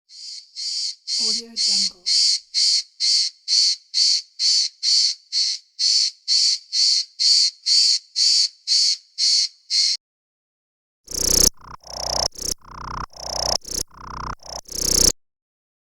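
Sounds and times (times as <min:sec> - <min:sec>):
cricket chirping: 0:11.1 - 0:15.1.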